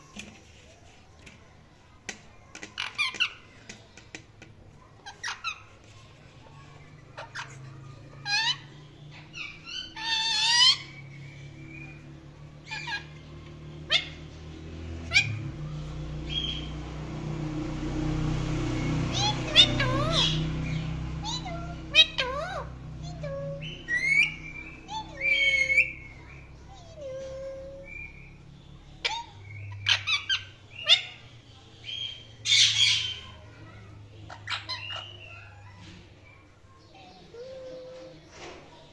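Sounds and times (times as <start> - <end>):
parakeet calls: 4.8 - 17.4, 18.4 - 38.9
parakeet harsh squawk: 7.1 - 11.0, 12.6 - 14.2, 15.0 - 15.4, 19.1 - 26.1.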